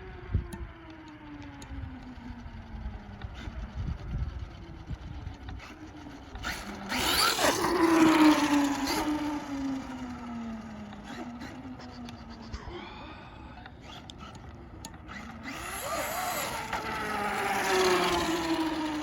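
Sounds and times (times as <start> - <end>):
drivetrain and tyre noise: 0.0 - 19.0
electric motor whining: 0.1 - 19.0.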